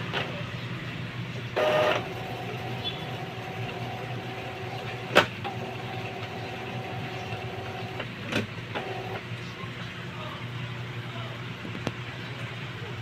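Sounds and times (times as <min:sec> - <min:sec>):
printer motor whirring: 0:01.4 - 0:09.3
printer click: 0:04.8 - 0:09.2.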